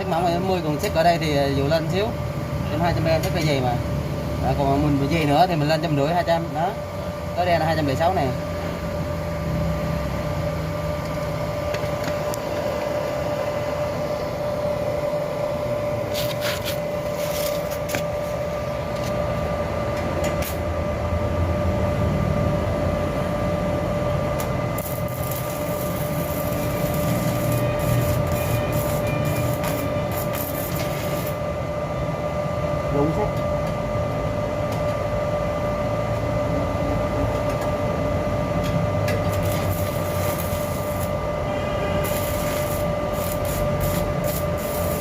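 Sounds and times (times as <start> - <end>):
steady hum: 0.0 - 45.0
welding arc crackling: 16.0 - 18.2, 24.4 - 31.4, 39.2 - 41.2, 42.0 - 45.0.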